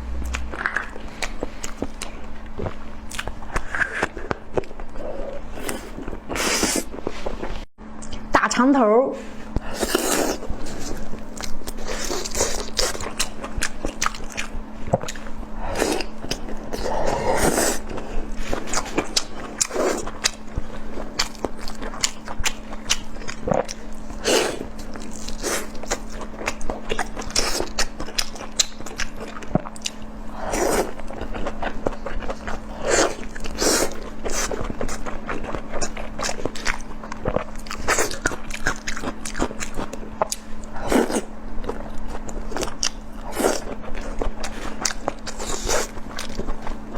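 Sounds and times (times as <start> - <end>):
faint steady hum: 0.0 - 46.9
person chewing food: 0.2 - 8.2, 9.5 - 46.9.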